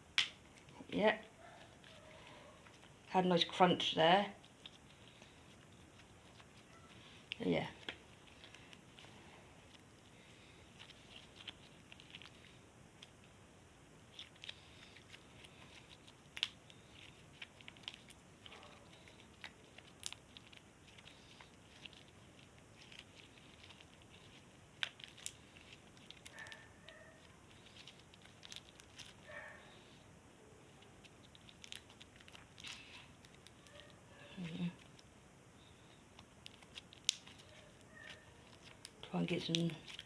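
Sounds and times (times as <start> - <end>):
slime crackling and popping: 31.0 - 33.8, 36.2 - 40.0.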